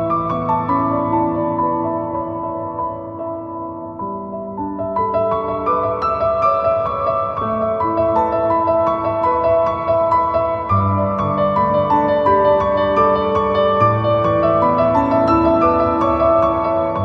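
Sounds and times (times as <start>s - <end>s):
gentle piano melody: 0.0s - 17.0s.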